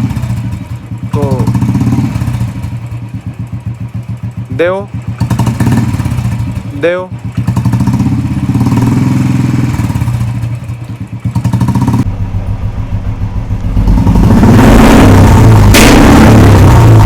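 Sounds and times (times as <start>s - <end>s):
motorcycle engine revving: 0.0s - 17.0s
sharp exhaust pop: 11.4s - 17.0s.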